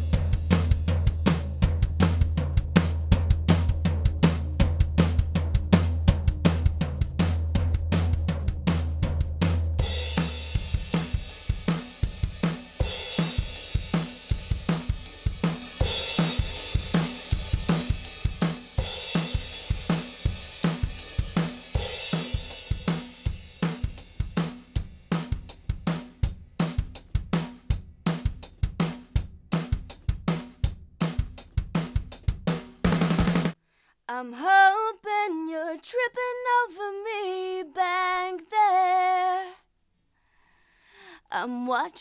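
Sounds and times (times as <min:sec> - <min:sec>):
drum kit beat: 0:00.0 - 0:33.6.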